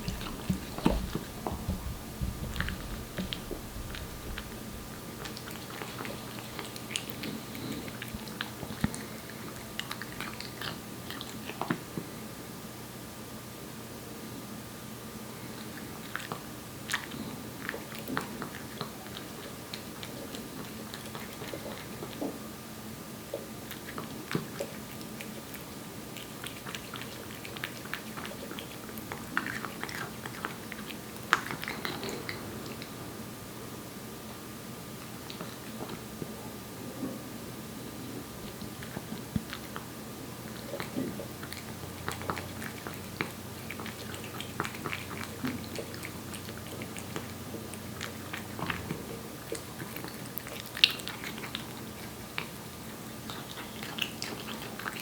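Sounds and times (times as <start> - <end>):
cat eating wet food: 0.0 - 12.4, 15.3 - 22.5, 23.2 - 33.3, 34.9 - 55.0.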